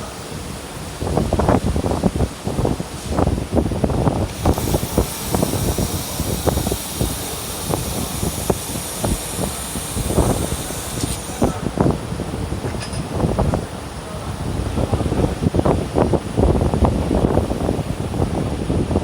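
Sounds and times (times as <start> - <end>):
laser welder hissing: 4.2 - 11.8.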